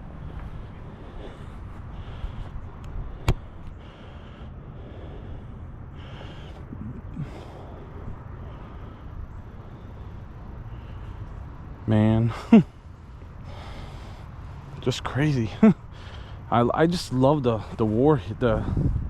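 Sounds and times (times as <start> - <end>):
wind rumbling on microphone: 17.6 - 19.0.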